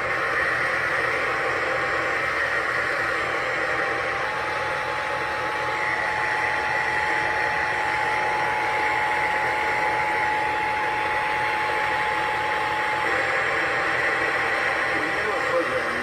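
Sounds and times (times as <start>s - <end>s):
radio static hiss: 14.9s - 16.0s.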